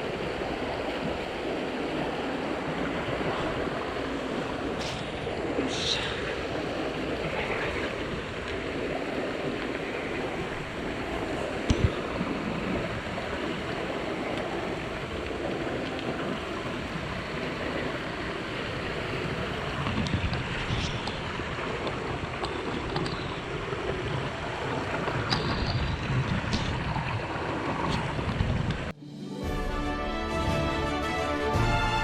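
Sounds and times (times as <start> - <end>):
stream rushing over rocks: 0.0 - 28.9.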